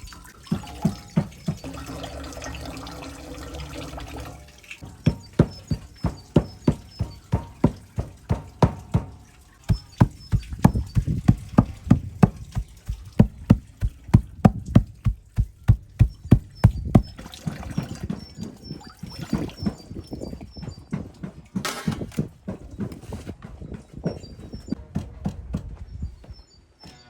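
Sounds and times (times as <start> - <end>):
knife chopping on wooden board: 4.9 - 9.1, 9.7 - 17.1.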